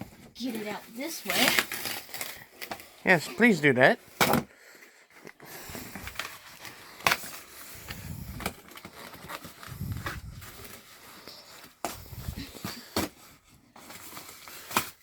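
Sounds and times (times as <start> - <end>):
cardboard box rustling and scraping: 5.8 - 15.0.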